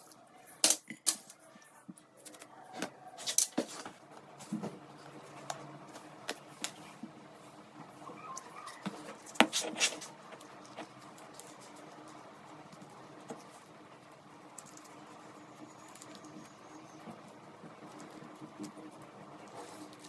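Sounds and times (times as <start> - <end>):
light scratching: 1.3 - 12.3
steady low hum: 2.9 - 20.0.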